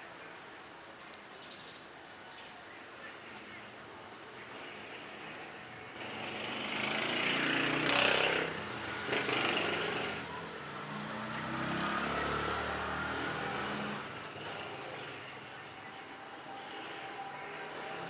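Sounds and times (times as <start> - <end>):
small engine passing by: 4.5 - 18.0
engine note rising in pitch: 6.2 - 14.0.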